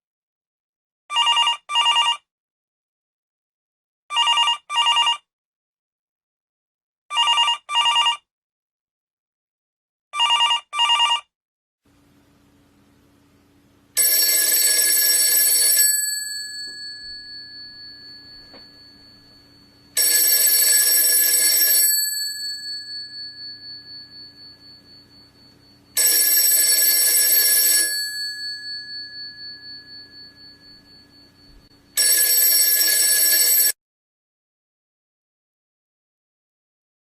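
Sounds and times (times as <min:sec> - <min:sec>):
telephone ringing: 0:01.1 - 0:02.2, 0:04.1 - 0:05.2, 0:07.1 - 0:08.2, 0:10.2 - 0:11.3, 0:14.0 - 0:33.8.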